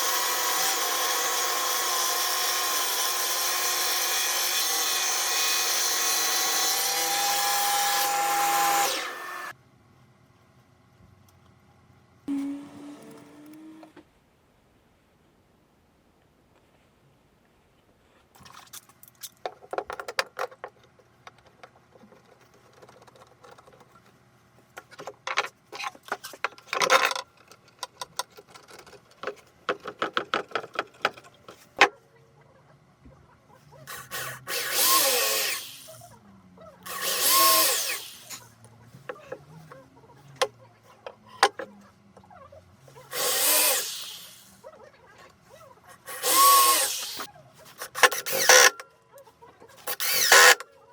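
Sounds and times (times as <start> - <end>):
power drill running: 0.0 - 9.6, 33.9 - 35.9, 36.9 - 38.4, 43.1 - 44.5, 46.0 - 47.3, 48.0 - 48.8, 49.8 - 50.6
tools and wood being handled: 18.2 - 32.0.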